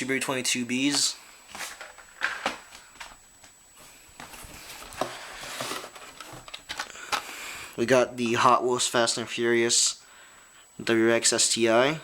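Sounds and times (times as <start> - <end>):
rustling: 1.5 - 7.4.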